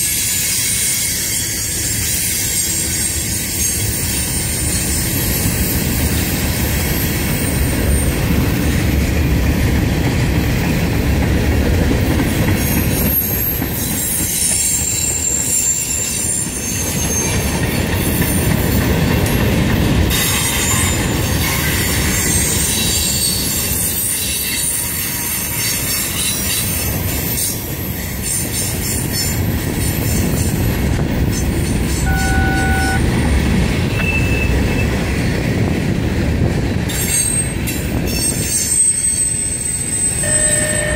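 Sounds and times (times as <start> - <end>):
freight train rumbling: 0.0 - 40.9
high-pitched wheel squeal: 32.0 - 33.0, 37.1 - 40.9.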